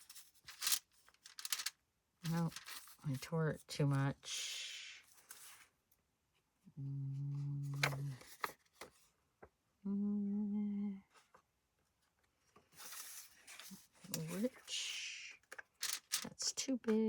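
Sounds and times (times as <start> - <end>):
person humming long notes: 9.8 - 11.0.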